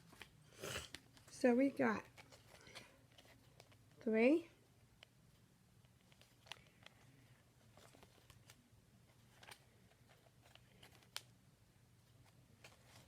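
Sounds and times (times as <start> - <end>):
faint clicks and taps of objects: 4.8 - 11.3.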